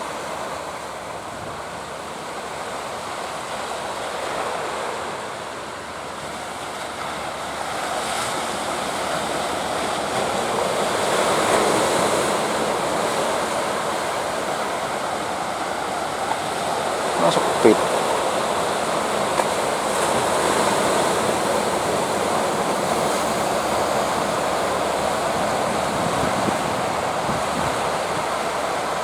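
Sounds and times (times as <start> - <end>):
ocean surf breaking: 0.0 - 29.0
wind: 0.0 - 29.0.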